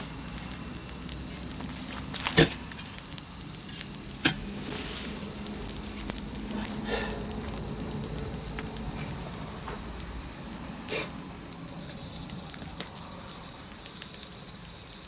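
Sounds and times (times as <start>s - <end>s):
campfire crackling: 0.0s - 15.0s
fire snapping: 0.0s - 15.0s
steady hiss: 0.0s - 15.0s.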